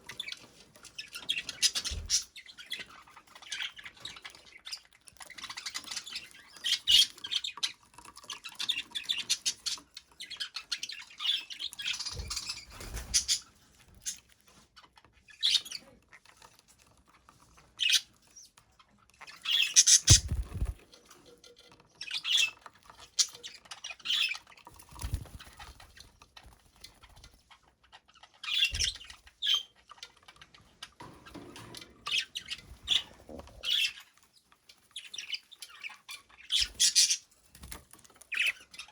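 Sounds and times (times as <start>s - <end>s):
budgerigar chirping and squawking: 5.6s - 7.6s, 8.4s - 13.4s, 15.3s - 16.0s, 17.8s - 18.1s, 19.3s - 20.7s, 22.0s - 24.4s, 28.0s - 29.8s, 32.1s - 34.1s, 35.0s - 37.3s.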